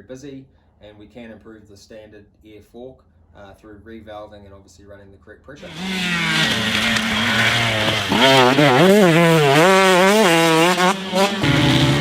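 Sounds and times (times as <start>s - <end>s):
dirt bike engine revving: 5.6s - 12.0s.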